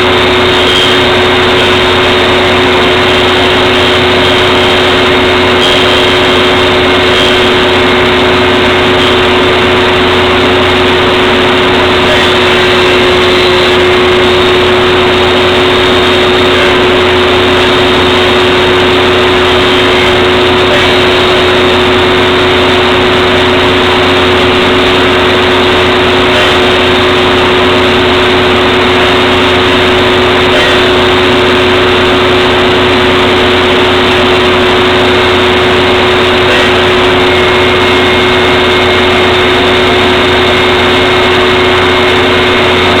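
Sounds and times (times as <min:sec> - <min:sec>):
table saw running: 0:00.0 - 0:43.0.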